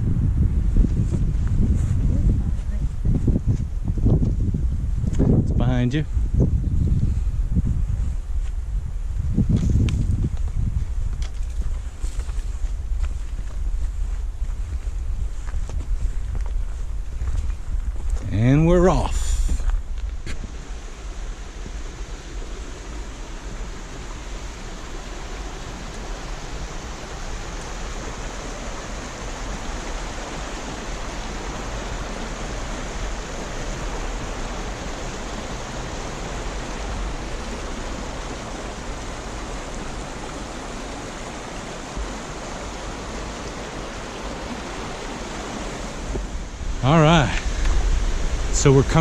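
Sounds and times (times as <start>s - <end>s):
stream water rushing: 18.4s - 49.0s.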